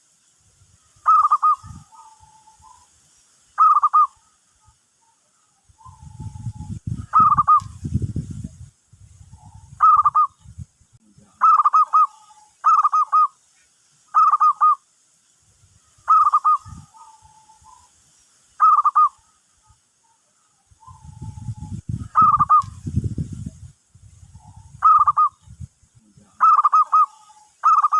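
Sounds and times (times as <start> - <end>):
dove cooing: 1.0 - 2.8, 3.6 - 4.4, 5.8 - 7.7, 9.3 - 10.4, 11.4 - 13.3, 14.2 - 14.8, 16.1 - 17.9, 18.6 - 19.4, 20.8 - 22.8, 24.3 - 25.4, 26.4 - 27.9.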